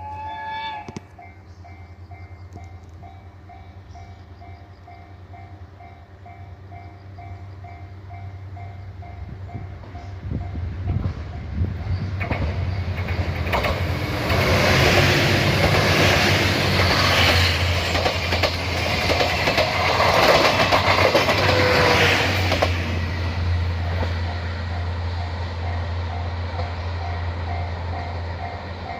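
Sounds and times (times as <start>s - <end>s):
train wheels clicking over rail joints: 6.3s - 28.9s.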